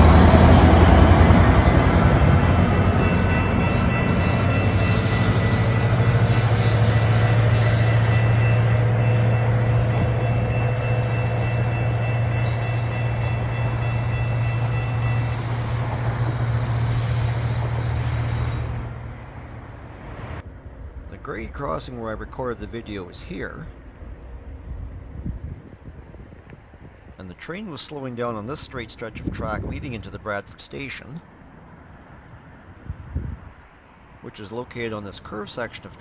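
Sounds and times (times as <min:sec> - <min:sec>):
diesel locomotive engine drone: 0:00.0 - 0:36.0
locomotive whine: 0:00.0 - 0:36.0.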